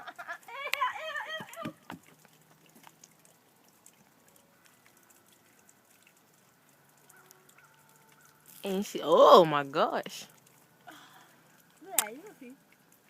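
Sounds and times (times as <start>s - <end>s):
faint ticks: 1.4s - 8.7s.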